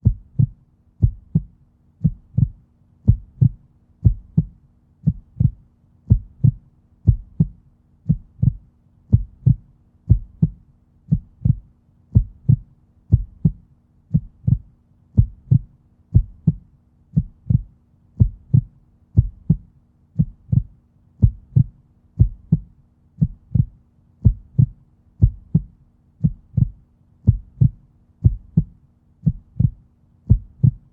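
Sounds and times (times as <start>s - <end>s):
heartbeat thumps: 0.0s - 30.9s.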